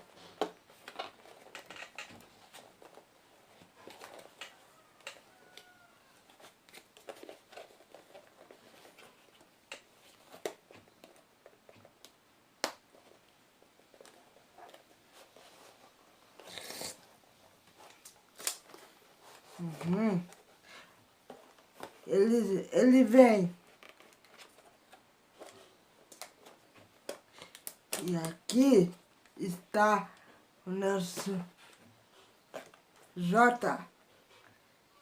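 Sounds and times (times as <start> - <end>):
packaging clicks and rustles: 0.2 - 15.3, 23.6 - 28.4.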